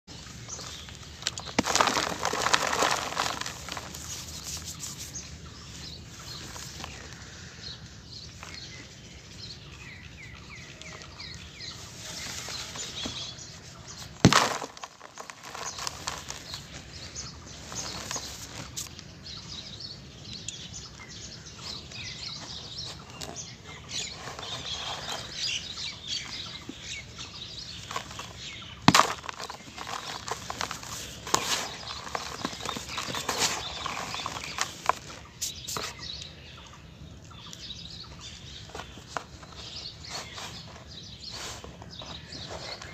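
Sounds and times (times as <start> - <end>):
cement crumbling and crunching: 0.4 - 4.8, 12.6 - 18.9, 23.9 - 35.3.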